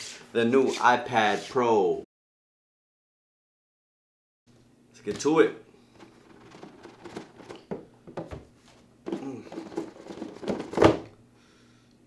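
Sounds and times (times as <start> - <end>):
packaging crinkling and scraping: 6.0 - 7.8, 8.7 - 11.1.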